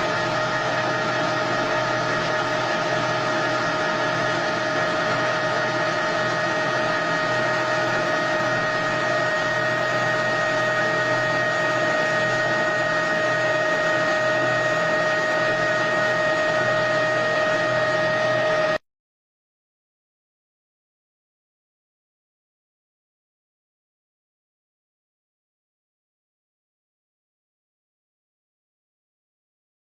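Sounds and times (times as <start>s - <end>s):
machine hiss with high whine: 0.0s - 18.8s.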